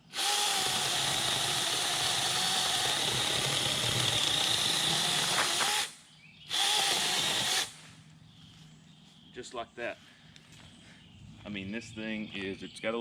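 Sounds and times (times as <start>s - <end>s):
cordless chainsaw whining: 0.0s - 5.9s, 6.5s - 7.7s.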